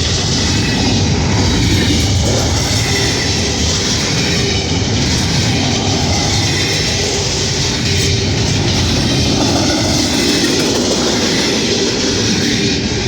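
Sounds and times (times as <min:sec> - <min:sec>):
freight train wheels rumbling on rails: 0:00.0 - 0:13.0.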